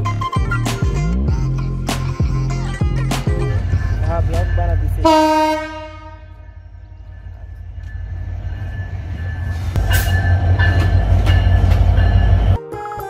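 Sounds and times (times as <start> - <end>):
train rumbling: 2.6 - 12.6
train horn: 5.0 - 7.0
train wheel clacks: 7.0 - 12.5.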